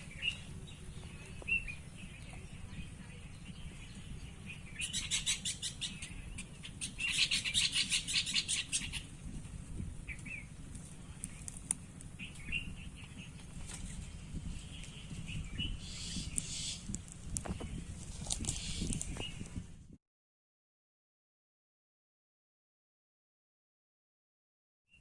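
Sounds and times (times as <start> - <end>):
bird chattering and chirping: 0.0 - 9.2, 14.0 - 17.0
steady low rumble: 0.0 - 20.0.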